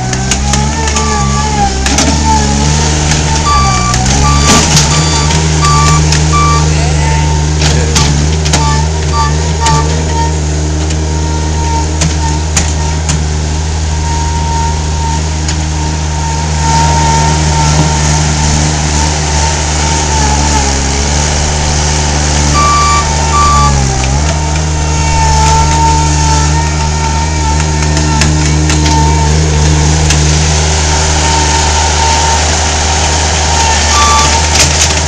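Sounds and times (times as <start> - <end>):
skid steer engine running: 0.0 - 35.0
wavering whine: 0.0 - 35.0
short beeps: 3.4 - 7.3, 8.6 - 10.2, 22.5 - 23.9, 33.9 - 34.4.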